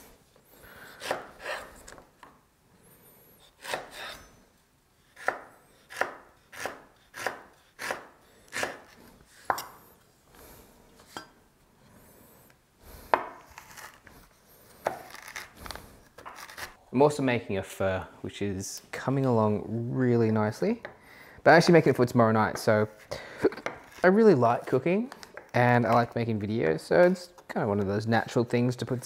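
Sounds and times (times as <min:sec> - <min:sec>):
knife chopping on cutting board: 0:05.2 - 0:09.8.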